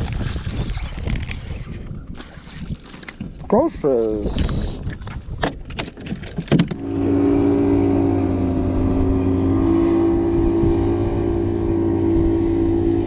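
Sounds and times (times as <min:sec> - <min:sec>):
motorboat engine passing: 0:06.7 - 0:13.0.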